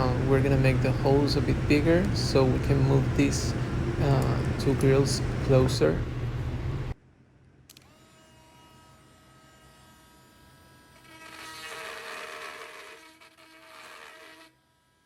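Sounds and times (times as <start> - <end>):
electric power tool whining: 0.0 - 6.6, 7.7 - 15.0.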